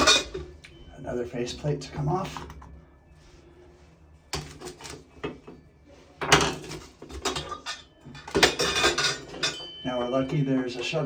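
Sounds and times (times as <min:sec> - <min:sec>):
metal clinks and knocks: 0:00.0 - 0:00.5, 0:06.2 - 0:11.0.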